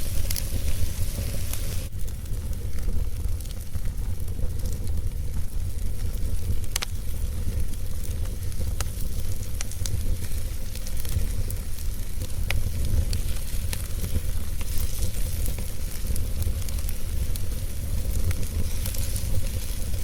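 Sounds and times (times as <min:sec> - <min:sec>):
fire hissing: 0:00.0 - 0:20.0
low rumble: 0:00.0 - 0:20.0
wood crackling and popping: 0:00.0 - 0:20.0.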